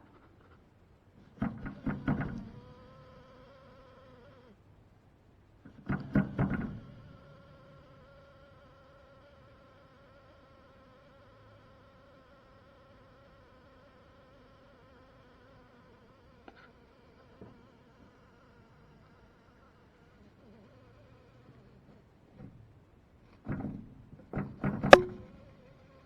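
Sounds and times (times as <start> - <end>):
quick knocks: 24.4 - 25.4.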